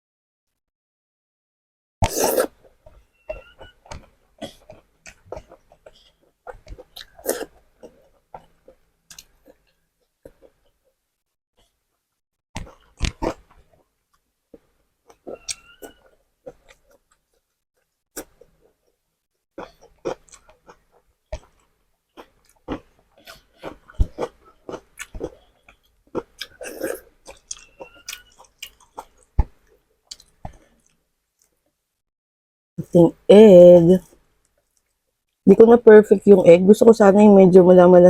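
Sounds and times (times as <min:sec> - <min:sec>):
person chewing food: 0:02.0 - 0:11.0, 0:12.6 - 0:31.8, 0:34.1 - 0:35.4.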